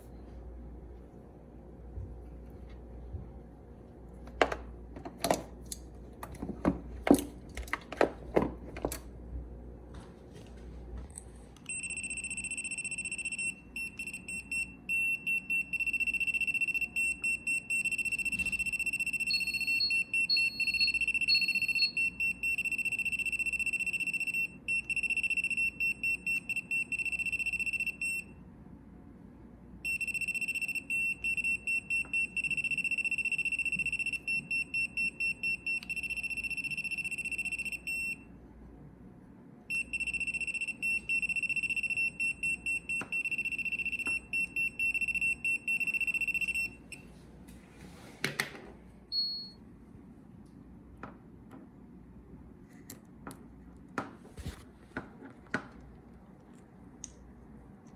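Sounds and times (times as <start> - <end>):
handling knocks and clicks: 4.2 - 9.1
electronic buzzer alarm tone: 11.7 - 28.3, 29.9 - 38.2, 39.7 - 47.0
short high beeps: 11.7 - 28.3.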